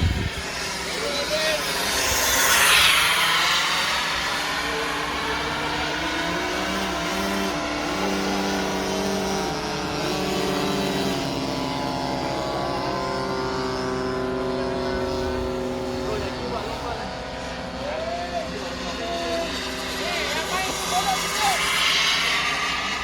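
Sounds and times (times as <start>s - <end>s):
model jet turbine whining: 0.0s - 23.0s.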